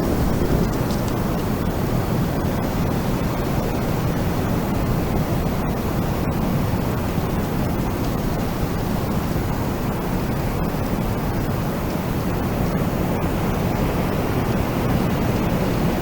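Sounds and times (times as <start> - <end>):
wind blowing: 0.0 - 4.5.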